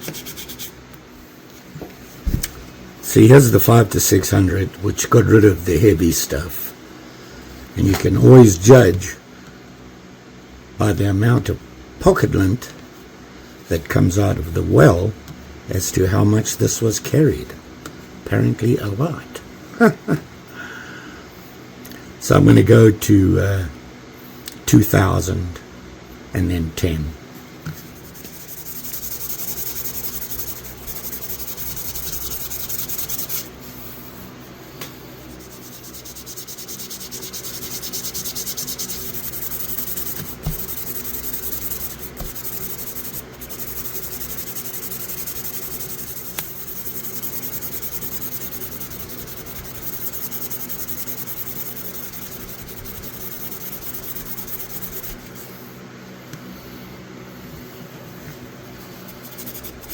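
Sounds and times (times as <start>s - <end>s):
sandpaper rubbing on metal knife: 0.0s - 0.8s, 27.9s - 33.9s, 35.3s - 55.4s, 58.8s - 59.9s.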